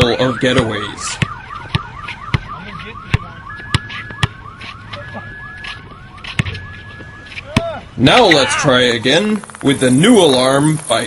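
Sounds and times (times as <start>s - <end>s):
car alarm whooping: 0.0s - 10.2s.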